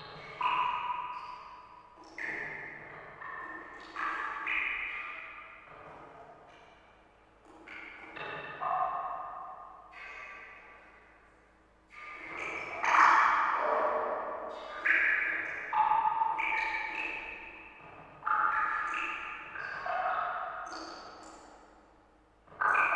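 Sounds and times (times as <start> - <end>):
water drops plinking into water: 14.6 - 21.5.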